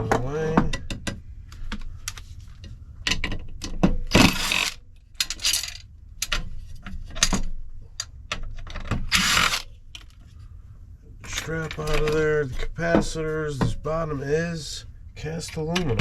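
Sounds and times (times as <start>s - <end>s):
short scraping rasps: 4.1s - 5.6s, 9.1s - 9.7s
metal parts clinking: 4.1s - 6.4s, 9.1s - 10.2s.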